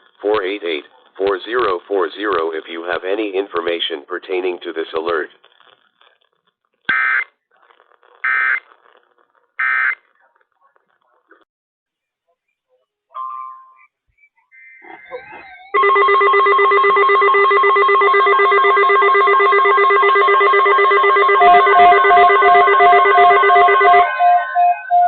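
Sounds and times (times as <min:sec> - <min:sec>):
pulsed beeps: 0:13.2 - 0:25.0
electronic alert tone with trill: 0:17.3 - 0:25.0.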